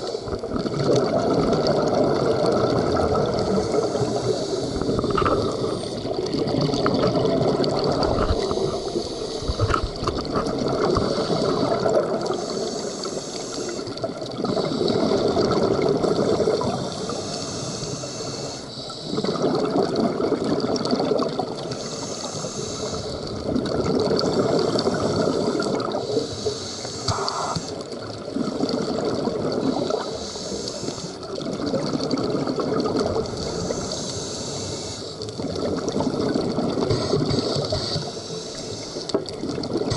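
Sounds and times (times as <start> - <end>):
regulator bubbling exhalations: 0.0 - 39.9
diver inhaling through regulator: 3.3 - 6.1, 8.1 - 19.8, 21.6 - 23.4, 24.4 - 28.8, 29.6 - 31.3, 33.2 - 35.3, 36.7 - 39.2.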